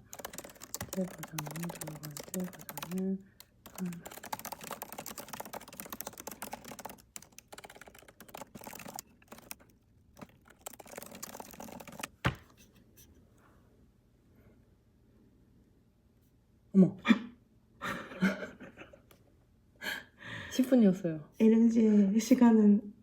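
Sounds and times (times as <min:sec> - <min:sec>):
rapid typing on keyboard: 0:00.0 - 0:12.4.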